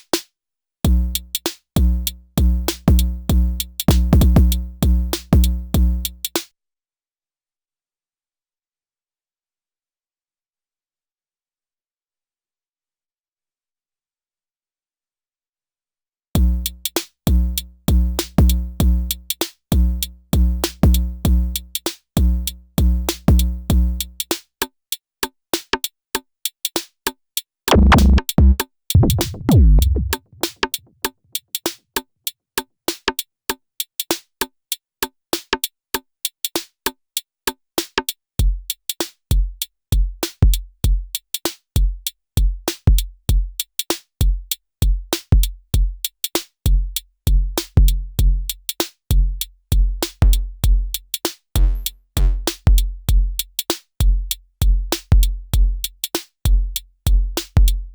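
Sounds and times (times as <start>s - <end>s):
hi-hat clicks: 1.0s - 6.4s, 37.2s - 57.8s
deep kick drums: 1.8s - 6.0s, 16.4s - 21.5s, 27.7s - 30.7s, 46.7s - 48.5s, 49.1s - 51.0s, 51.6s - 53.4s, 54.0s - 55.8s, 56.5s - 57.9s
low boom: 27.7s - 30.3s.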